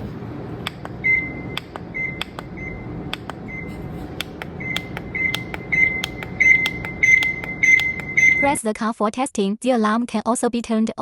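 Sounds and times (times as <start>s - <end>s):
button clicks: 0.7s - 8.6s
alarm clock beeping: 0.9s - 8.6s.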